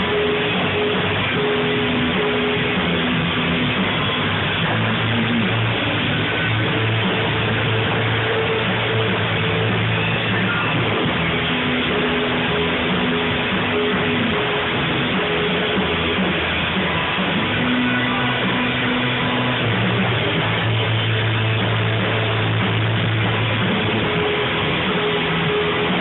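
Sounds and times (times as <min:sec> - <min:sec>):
guitar-led rock band playing: 0:00.0 - 0:26.0
low bass notes: 0:00.0 - 0:26.0.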